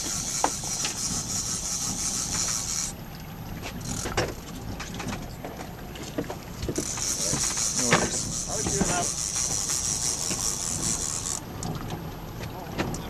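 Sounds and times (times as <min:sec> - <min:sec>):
boat motor rumbling: 0:00.0 - 0:13.0
water noise: 0:00.0 - 0:13.0
wind: 0:00.0 - 0:13.0
knocks on boat: 0:03.6 - 0:09.6.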